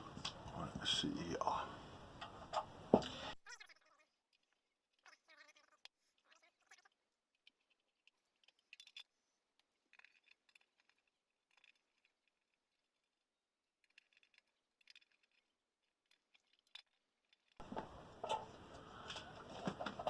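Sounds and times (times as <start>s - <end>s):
faint clicks and rustles: 0.0s - 20.0s.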